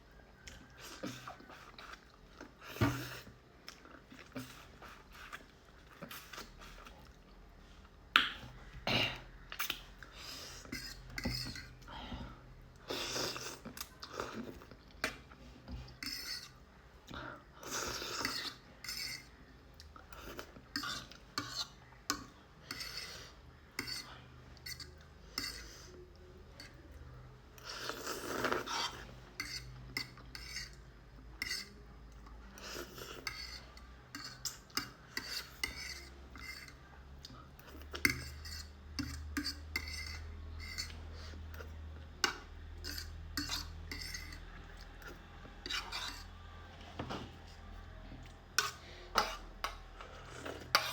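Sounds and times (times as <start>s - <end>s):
utensil clinking and scraping on dish: 38.0s - 41.0s, 42.2s - 46.3s, 48.6s - 50.9s.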